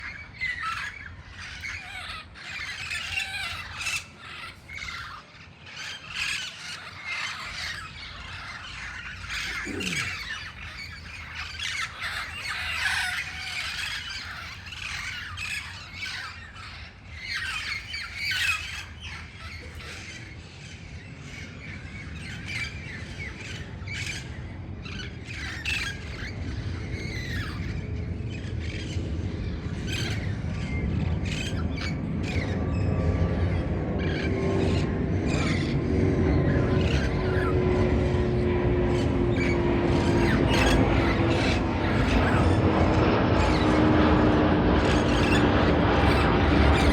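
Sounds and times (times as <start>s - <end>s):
parrots squawking: 0.1s - 20.6s, 34.0s - 46.9s
low rumble: 27.7s - 46.9s.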